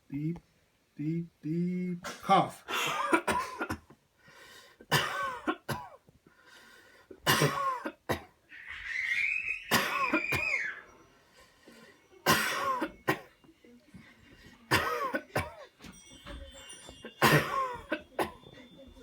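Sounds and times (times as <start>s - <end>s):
person coughing hard: 2.1s - 3.9s, 4.9s - 6.0s, 7.2s - 8.3s, 9.7s - 10.6s, 12.2s - 13.3s, 14.7s - 15.6s, 17.2s - 18.4s
high-pitched drawn-out breath: 8.5s - 12.2s.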